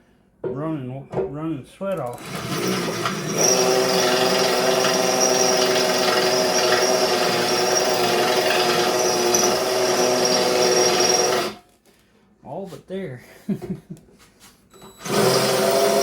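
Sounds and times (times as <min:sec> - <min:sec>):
electric drill boring through steel: 0:02.1 - 0:11.6, 0:14.8 - 0:16.0.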